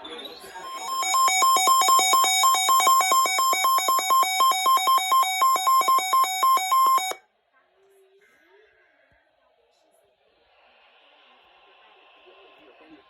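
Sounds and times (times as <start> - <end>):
two-pitch electronic beeping: 0.6 - 7.2.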